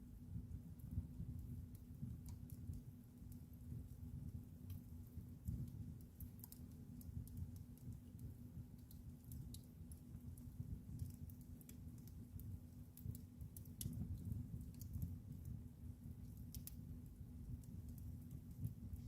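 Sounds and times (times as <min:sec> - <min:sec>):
wood fire crackling and popping: 0:00.0 - 0:19.0.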